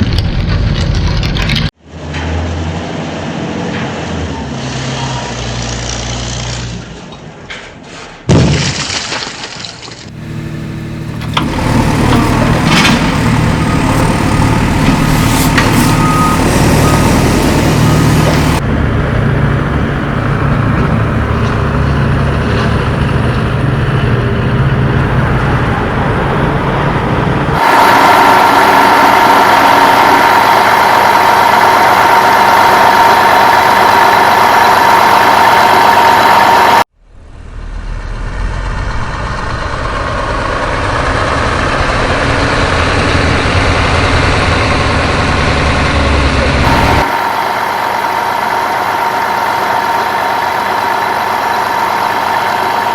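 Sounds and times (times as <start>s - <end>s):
steady high whine: 10.1s - 21.6s, 24.4s - 36.9s, 46.6s - 52.9s
deep engine rumble: 10.1s - 52.9s
truck engine running: 10.1s - 52.9s.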